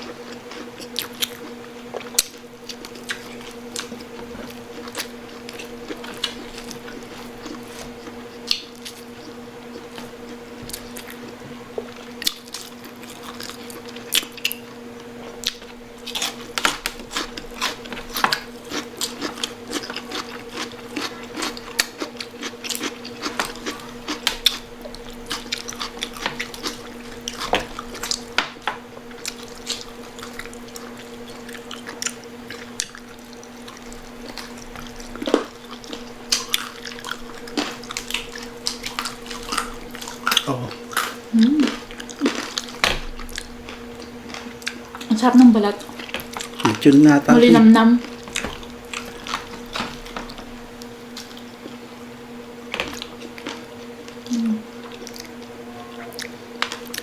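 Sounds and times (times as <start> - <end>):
crunchy chewing: 0.0 - 47.2, 48.0 - 57.0
steady low hum: 0.0 - 57.0
wet mouth sounds: 40.2 - 42.3, 54.3 - 55.2.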